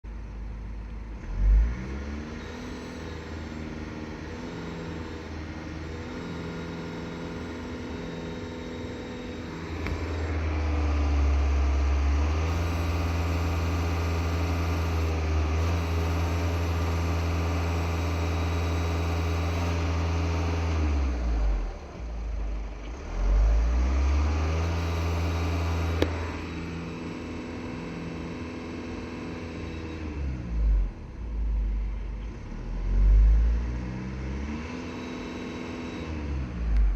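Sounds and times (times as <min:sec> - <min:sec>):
diesel engine revving: 0:00.8 - 0:36.9
turbocharger whistle: 0:02.2 - 0:10.3.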